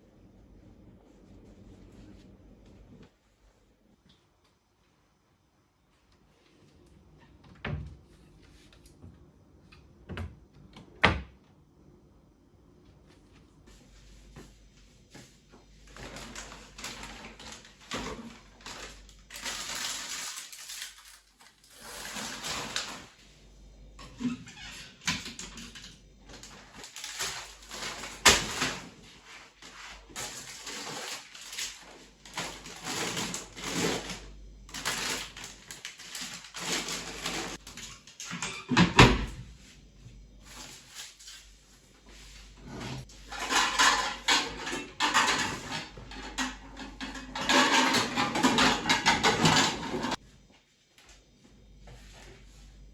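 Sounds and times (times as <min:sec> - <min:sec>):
things rustling and clattering: 0:13.2 - 0:23.2, 0:24.0 - 0:39.6, 0:40.4 - 0:50.2.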